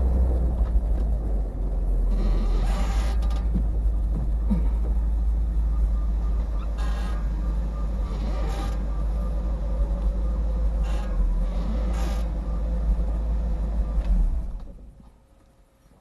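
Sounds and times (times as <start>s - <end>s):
car driving on snowy road: 0.0s - 16.0s.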